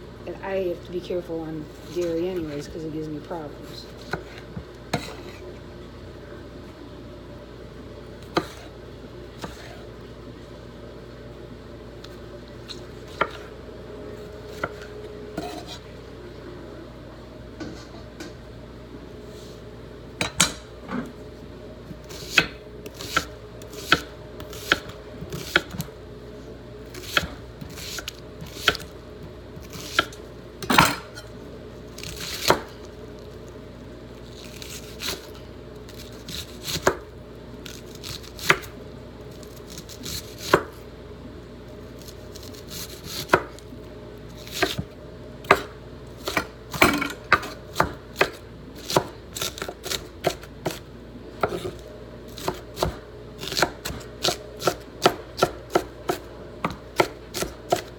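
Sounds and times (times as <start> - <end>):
knife chopping on cutting board: 4.0 - 5.4, 8.3 - 8.7, 9.4 - 9.8, 13.1 - 13.5, 22.0 - 25.9, 32.0 - 32.7, 35.9 - 37.0, 37.7 - 38.7, 39.6 - 40.7, 44.5 - 50.8, 51.4 - 51.8, 52.4 - 57.9.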